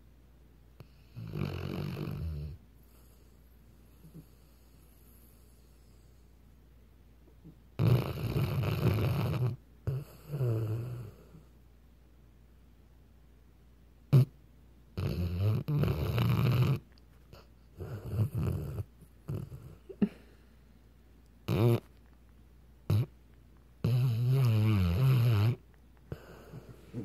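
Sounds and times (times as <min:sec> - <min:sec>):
dog snoring: 0:00.8 - 0:03.3, 0:03.9 - 0:06.1, 0:07.8 - 0:11.5, 0:14.1 - 0:14.3, 0:15.0 - 0:20.0, 0:21.4 - 0:21.9, 0:22.9 - 0:23.1, 0:23.8 - 0:27.0.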